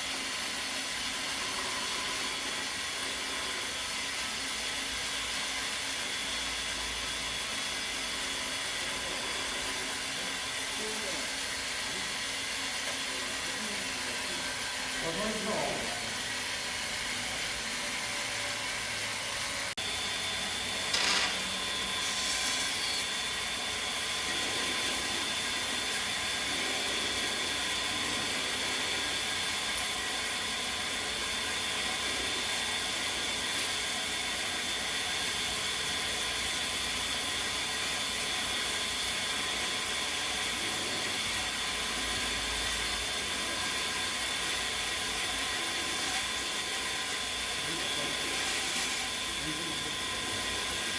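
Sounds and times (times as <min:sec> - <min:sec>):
steady motor whine: 0:00.0 - 0:50.9
power tool rasping wood: 0:48.2 - 0:49.1.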